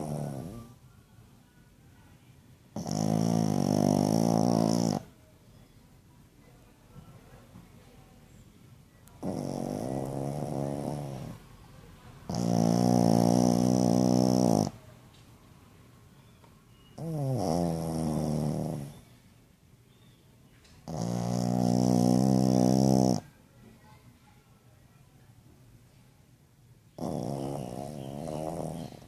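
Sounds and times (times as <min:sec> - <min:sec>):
dog snoring: 0:00.0 - 0:00.8, 0:02.7 - 0:05.1, 0:09.2 - 0:11.4, 0:12.3 - 0:14.8, 0:17.0 - 0:19.1, 0:20.8 - 0:23.3, 0:27.0 - 0:29.0.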